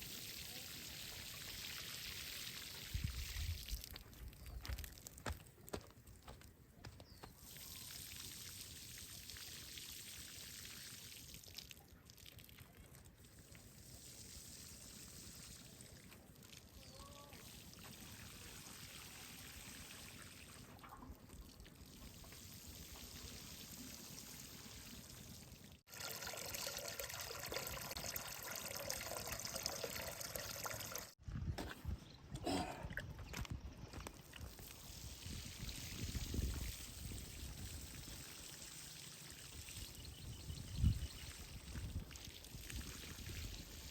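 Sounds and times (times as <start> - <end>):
water trickling and pouring: 7.4 - 31.2, 34.0 - 43.9.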